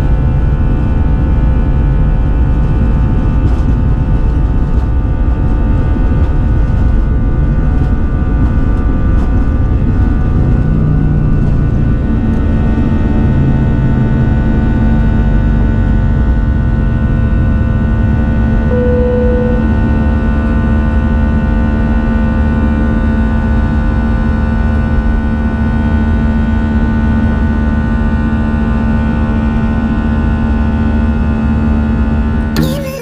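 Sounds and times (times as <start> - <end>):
jet engine cabin rumble: 0.1 - 13.0.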